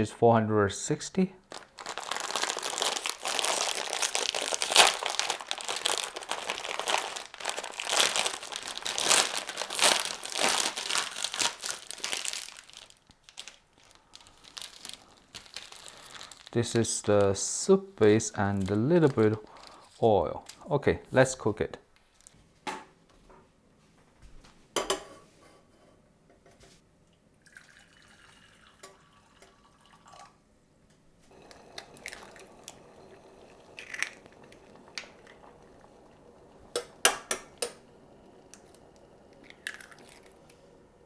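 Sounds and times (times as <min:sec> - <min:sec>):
water running: 0:01.4 - 0:12.9, 0:27.4 - 0:30.4, 0:31.3 - 0:41.0
steady faint hiss: 0:12.9 - 0:27.4.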